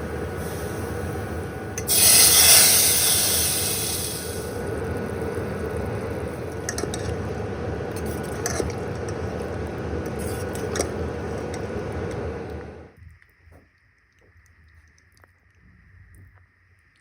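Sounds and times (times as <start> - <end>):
spoon stirring thick curry: 6.5 - 12.5.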